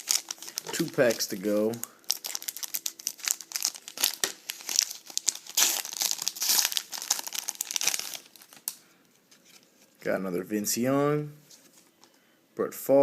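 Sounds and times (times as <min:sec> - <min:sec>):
wrapper crinkling and tearing: 0:00.0 - 0:08.8.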